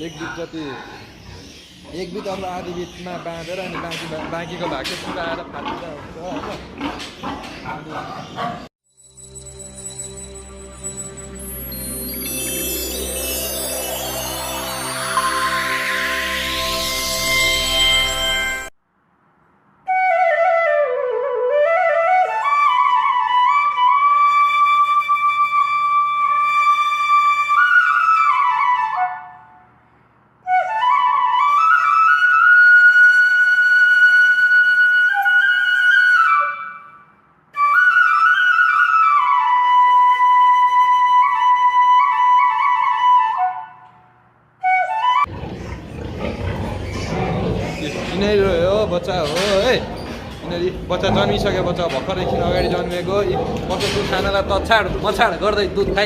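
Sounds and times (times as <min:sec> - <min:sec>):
solo flute melody: 0:19.9 - 0:29.6, 0:30.4 - 0:45.3.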